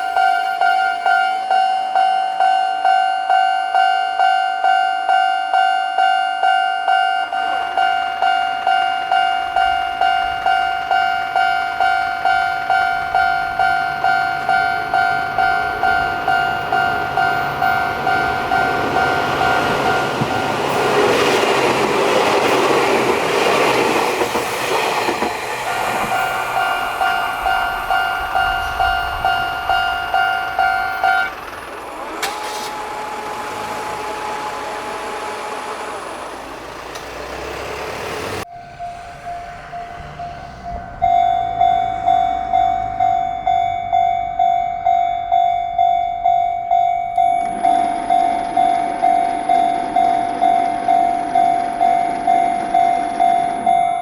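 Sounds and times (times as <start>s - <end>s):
level-crossing alarm clanging: 0.0s - 37.2s, 38.4s - 54.0s
electric train passing: 0.0s - 54.0s.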